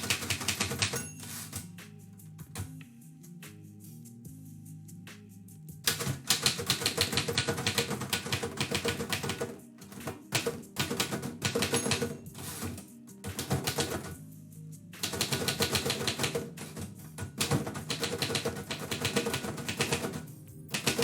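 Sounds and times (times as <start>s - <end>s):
typewriter keys striking: 0.0s - 1.6s, 5.9s - 14.1s, 15.0s - 21.0s
soft background music: 0.0s - 21.0s.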